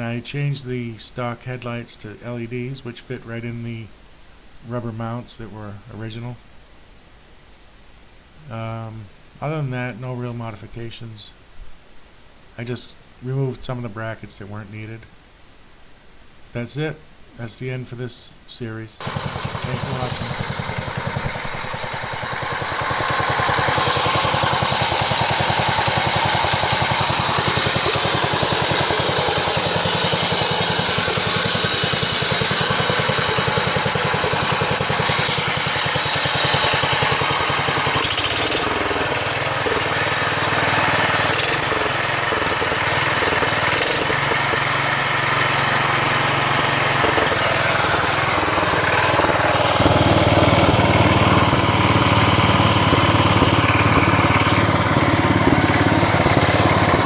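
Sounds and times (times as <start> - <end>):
garden tractor engine running: 19.0 - 57.0.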